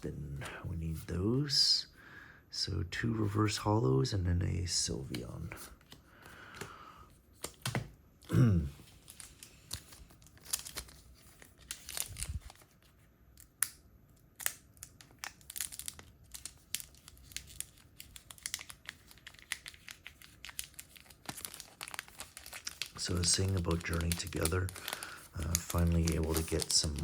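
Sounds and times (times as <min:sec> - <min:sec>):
foil wrapper crinkling and tearing: 0:08.8 - 0:27.0.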